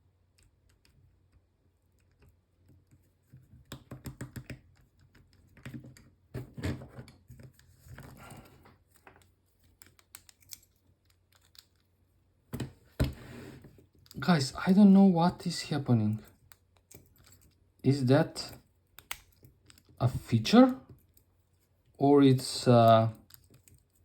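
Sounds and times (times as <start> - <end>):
lock picks clicking in padlock: 18.9 - 20.0.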